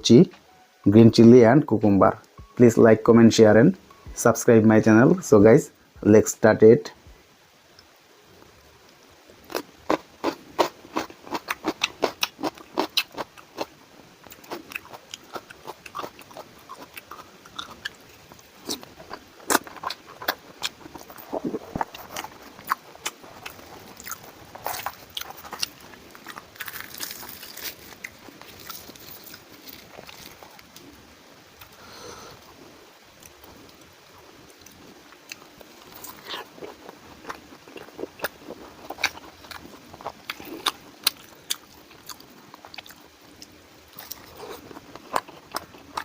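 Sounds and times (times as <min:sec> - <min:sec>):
crunchy bites and chewing: 0:09.5 - 0:30.9, 0:34.5 - 0:46.0.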